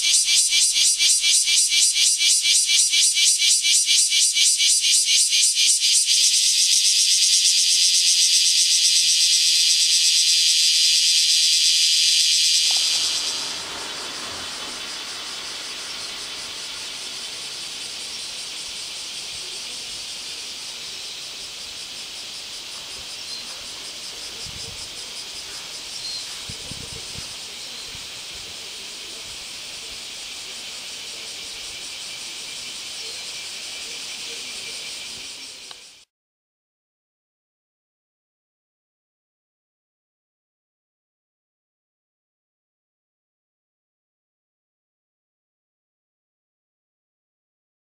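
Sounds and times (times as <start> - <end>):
cicadas buzzing: 0.0 - 36.1.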